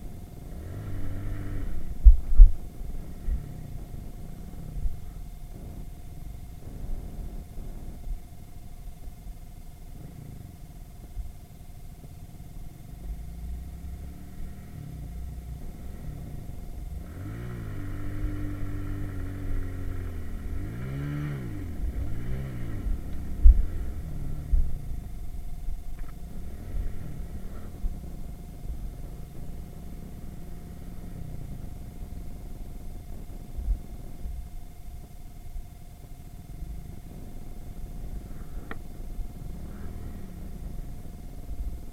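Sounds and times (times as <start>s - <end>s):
moped engine revving: 0.0s - 5.8s, 13.6s - 34.1s, 36.3s - 41.9s.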